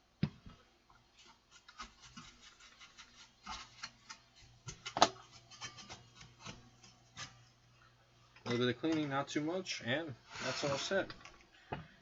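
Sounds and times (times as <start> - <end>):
brush scratching circuit board: 1.2 - 4.1, 10.3 - 11.0.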